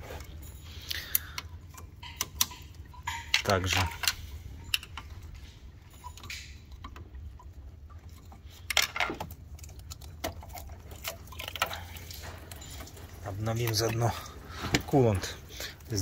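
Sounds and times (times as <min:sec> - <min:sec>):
steady low hum: 0:00.0 - 0:16.0
hose clip clicks and clinks: 0:00.8 - 0:05.1.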